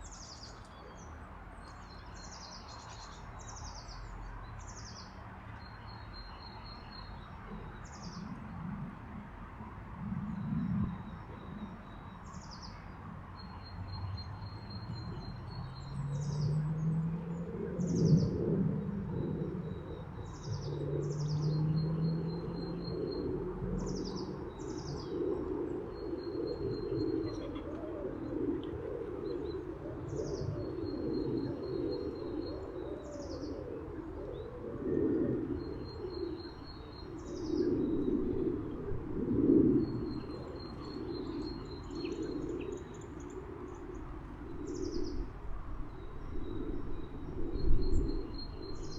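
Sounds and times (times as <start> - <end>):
small birds calling and trilling: 10.3 - 38.8, 39.7 - 48.9
pigeons cooing: 17.1 - 43.7.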